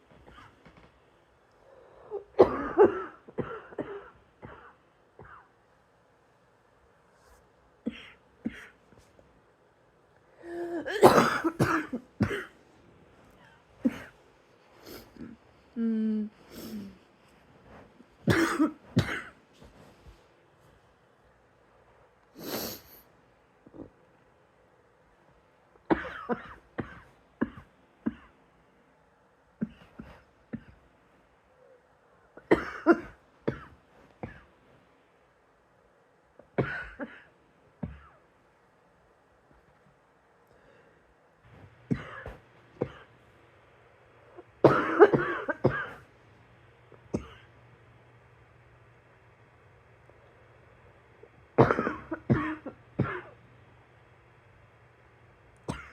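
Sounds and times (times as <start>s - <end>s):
person coughing: 2.0s - 5.5s, 7.8s - 8.8s, 10.4s - 12.6s, 13.8s - 14.2s, 18.2s - 19.4s, 25.9s - 28.4s, 32.4s - 34.5s, 36.6s - 38.2s, 41.9s - 43.1s, 44.3s - 46.1s, 47.1s - 47.5s, 51.6s - 53.4s, 55.7s - 55.9s.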